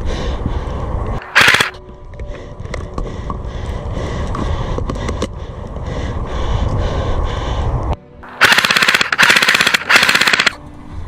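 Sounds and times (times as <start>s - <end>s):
low rumbling noise: 0.0s - 11.0s
airsoft rifle full-auto bursts: 1.2s - 1.8s, 8.3s - 10.6s.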